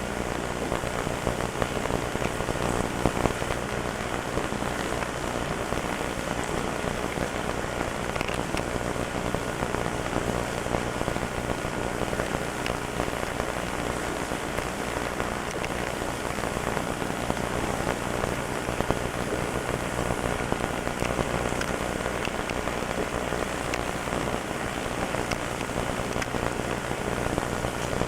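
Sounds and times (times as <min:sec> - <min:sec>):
crackling static hiss: 0:00.0 - 0:28.0
faint clicks: 0:08.0 - 0:08.7.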